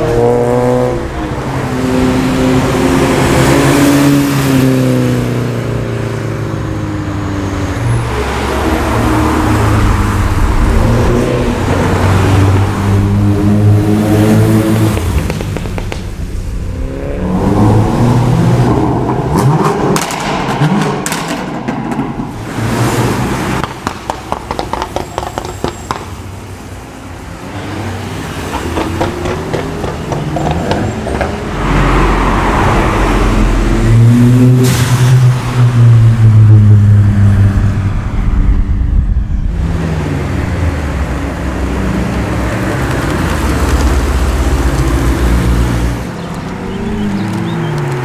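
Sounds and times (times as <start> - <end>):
race cars passing at speed: 0.0 - 48.0
exhaust pops and crackles: 14.5 - 16.7, 19.3 - 22.3, 23.5 - 26.2, 28.6 - 31.5, 39.0 - 48.0.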